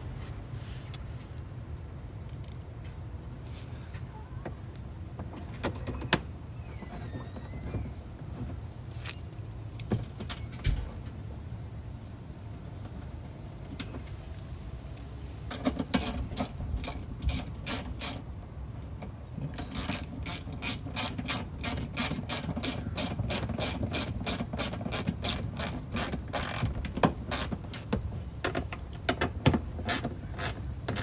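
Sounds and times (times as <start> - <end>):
ratchet wrench clicking: 16.0 - 18.2, 19.6 - 26.7, 29.9 - 31.0.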